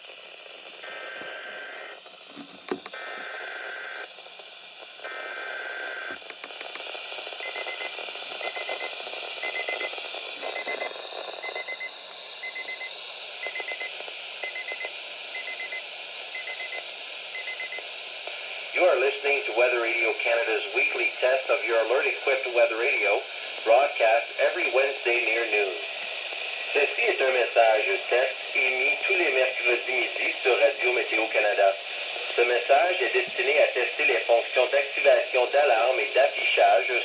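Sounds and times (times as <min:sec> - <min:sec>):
radio static: 0:00.0 - 0:37.0.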